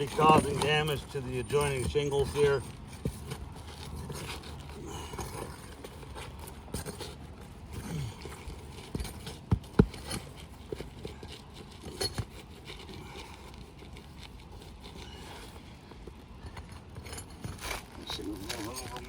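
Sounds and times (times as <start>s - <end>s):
tools knocking on roof shingles: 8.8s - 10.4s.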